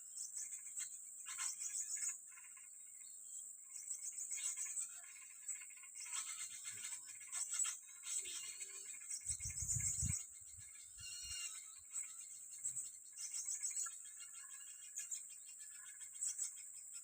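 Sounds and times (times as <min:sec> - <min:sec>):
insects droning: 0:00.0 - 0:17.0
small birds chirping: 0:00.0 - 0:17.0.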